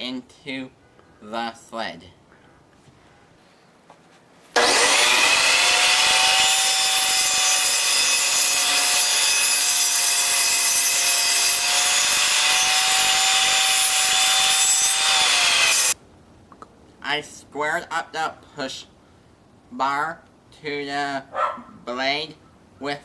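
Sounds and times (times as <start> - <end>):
table saw motor whining: 4.6 - 10.4, 11.1 - 16.0
saw blade cutting plywood: 4.6 - 16.0.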